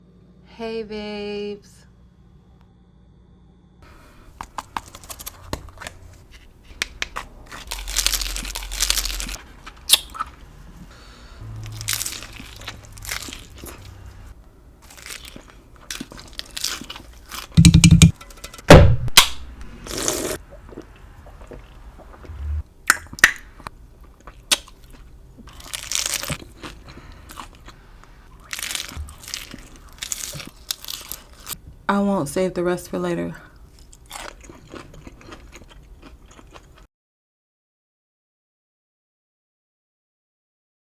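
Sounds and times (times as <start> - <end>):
crunching hard taco shell: 4.4 - 10.4, 14.8 - 18.6, 24.4 - 31.6.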